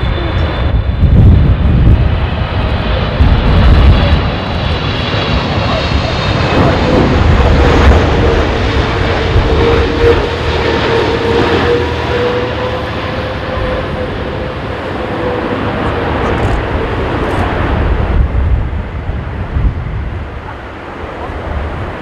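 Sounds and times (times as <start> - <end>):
jet engines rumbling: 0.0 - 22.0
humming tone: 7.6 - 17.4.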